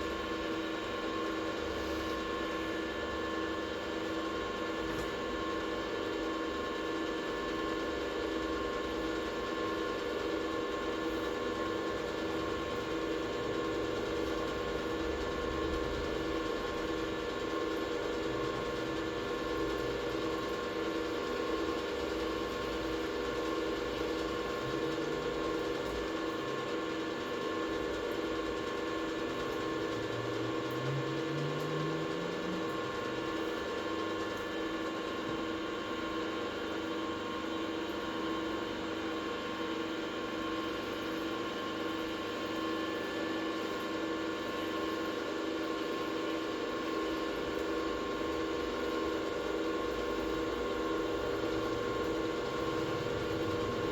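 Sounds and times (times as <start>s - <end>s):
electric motor humming: 29.4s - 33.6s.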